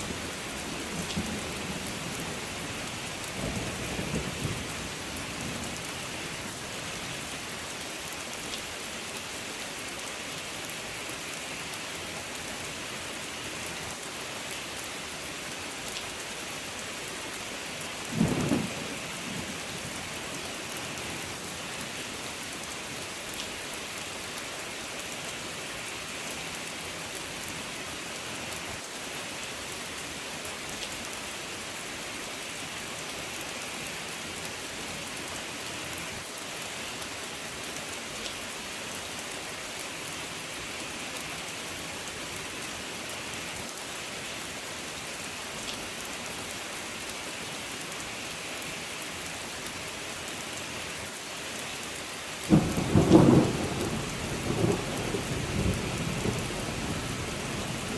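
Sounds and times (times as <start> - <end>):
steady rain falling: 0.0 - 57.9
low rumble of thunder: 18.1 - 19.8, 52.5 - 57.9.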